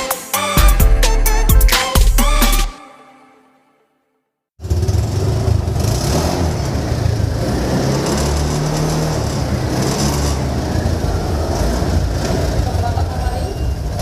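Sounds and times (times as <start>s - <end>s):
scooter engine exhaust note: 4.6s - 12.8s.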